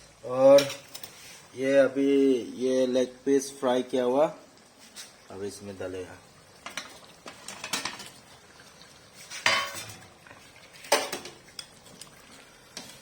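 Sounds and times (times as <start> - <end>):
metal utensil scraping pot: 6.6 - 8.2, 9.2 - 12.1.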